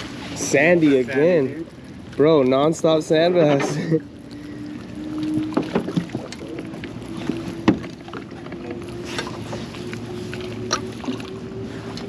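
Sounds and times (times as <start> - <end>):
boat motor humming: 0.0 - 12.0.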